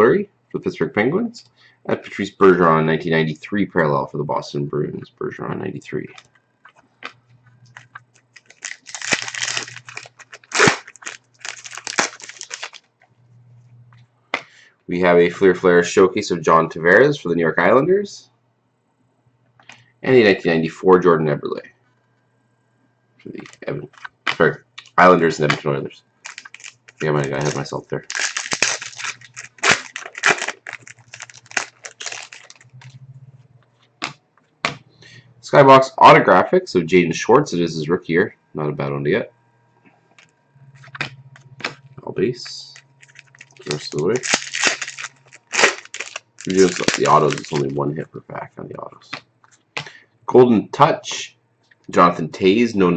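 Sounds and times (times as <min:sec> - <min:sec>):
faint low hum: 0:00.0 - 0:52.9
wrapper tearing and crinkling: 0:07.7 - 0:12.9, 0:26.2 - 0:32.8, 0:42.7 - 0:47.8.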